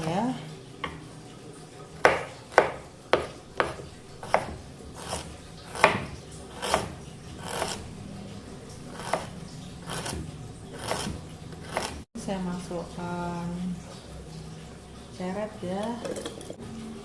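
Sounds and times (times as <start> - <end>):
knife chopping root: 2.0 - 7.8, 9.0 - 10.2, 10.8 - 12.0.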